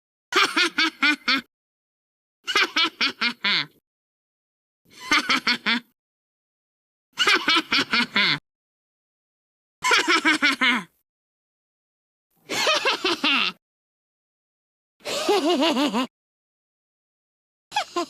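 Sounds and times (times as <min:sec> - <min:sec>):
cartoon character laughing: 0:00.4 - 0:01.5, 0:02.5 - 0:03.8, 0:05.0 - 0:06.0, 0:07.2 - 0:08.4, 0:09.8 - 0:11.0, 0:12.5 - 0:13.6, 0:15.1 - 0:16.1, 0:17.7 - 0:18.0.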